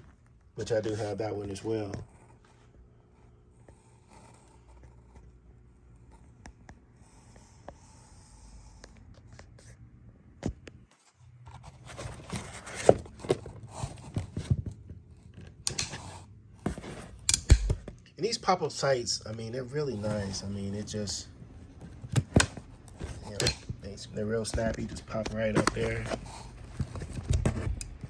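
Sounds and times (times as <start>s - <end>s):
gun handling clicks and scrapes: 15.3s - 18.1s, 21.9s - 23.9s.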